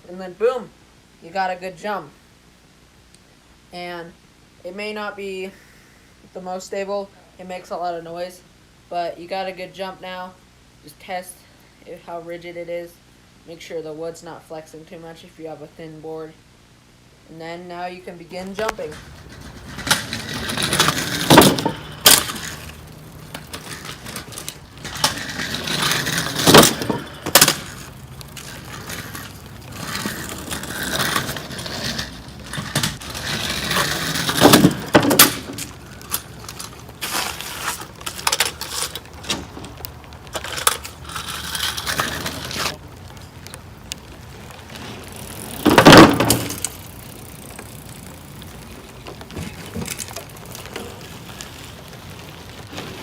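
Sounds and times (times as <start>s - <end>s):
bicycle tyres rolling: 18.3s - 53.0s
wooden board clattering on bricks: 18.6s - 22.4s, 34.1s - 35.7s, 45.6s - 46.6s.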